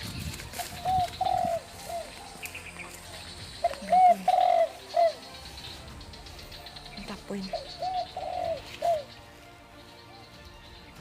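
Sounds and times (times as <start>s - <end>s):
small birds chirping: 0.0s - 11.0s
dove cooing: 0.6s - 9.2s.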